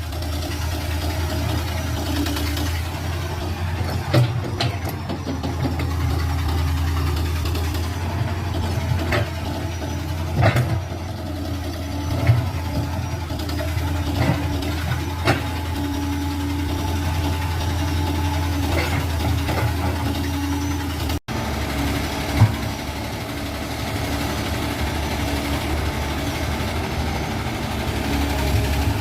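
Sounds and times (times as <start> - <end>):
excavator diesel engine running: 0.0 - 29.0
sharp knocks and clanks: 3.7 - 6.5, 10.2 - 11.0, 13.6 - 15.6.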